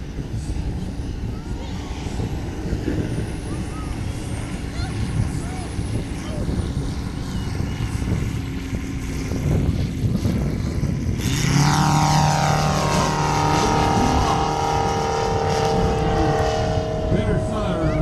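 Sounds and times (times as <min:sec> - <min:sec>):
model plane engine and propeller: 0:00.0 - 0:18.0.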